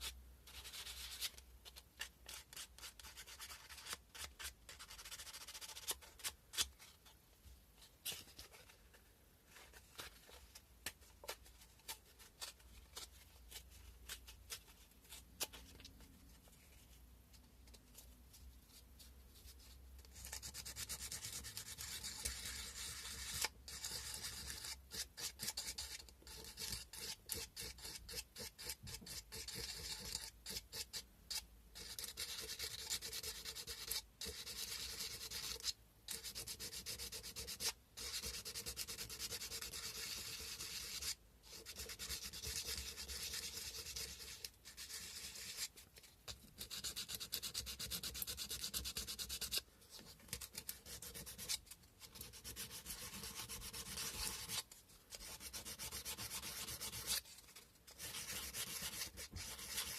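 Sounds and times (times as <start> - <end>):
sandpaper scratching on bone: 55.2 - 57.2, 57.9 - 59.9.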